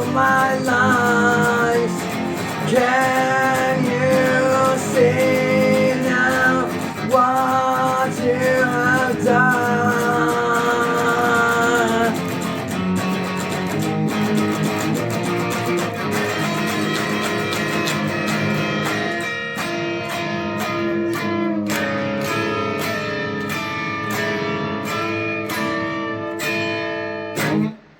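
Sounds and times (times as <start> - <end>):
instrumental rock music: 0.0 - 27.9.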